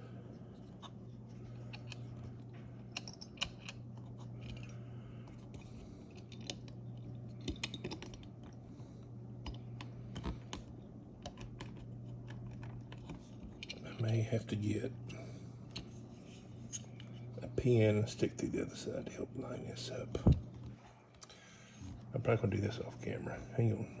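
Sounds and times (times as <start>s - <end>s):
steady low hum: 0.0s - 24.0s
small metal parts clicking: 2.9s - 3.8s, 7.4s - 8.3s.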